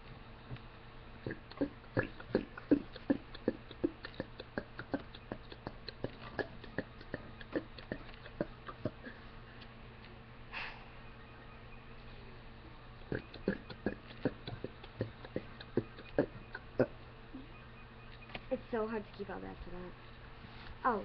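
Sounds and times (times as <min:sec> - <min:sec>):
breathy sound: 0:10.5 - 0:11.0.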